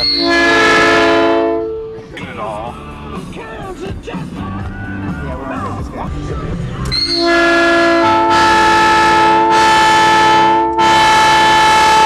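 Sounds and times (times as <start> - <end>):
train horn blasting chord: 0.0 - 2.1, 6.9 - 12.0.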